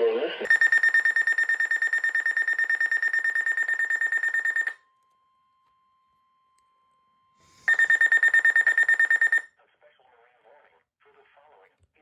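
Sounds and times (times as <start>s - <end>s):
faint steady tone: 0.5s - 4.8s, 7.6s - 9.4s
rapid electronic alarm beeping: 0.5s - 4.8s, 7.7s - 9.5s.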